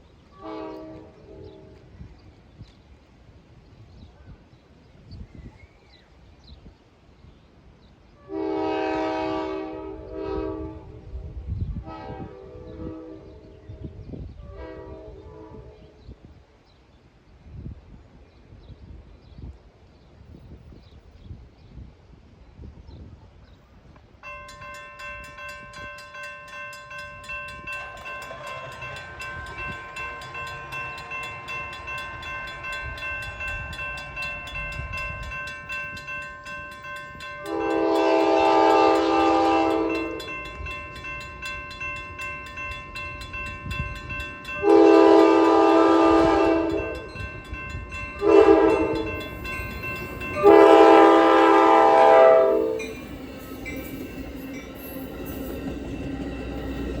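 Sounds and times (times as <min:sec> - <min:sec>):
train horn: 0:00.4 - 0:01.9, 0:08.2 - 0:16.0, 0:37.3 - 0:40.5, 0:44.6 - 0:49.5, 0:50.2 - 0:54.1
bell ringing: 0:24.2 - 0:57.0.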